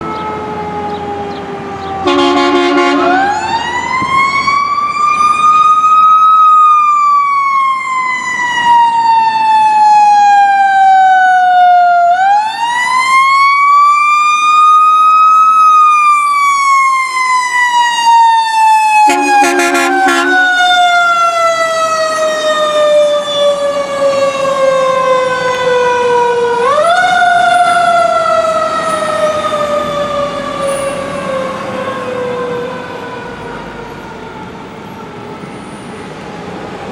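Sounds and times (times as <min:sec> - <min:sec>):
fire engine siren wailing: 0:00.0 - 0:36.9
air horn blasts: 0:02.0 - 0:03.4, 0:19.0 - 0:21.3.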